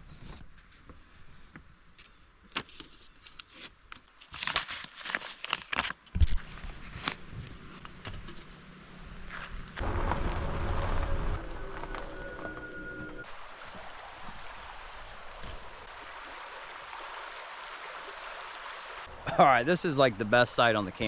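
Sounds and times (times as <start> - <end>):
paper crinkling and rustling: 2.5 - 8.6
low steady hum: 6.5 - 13.3.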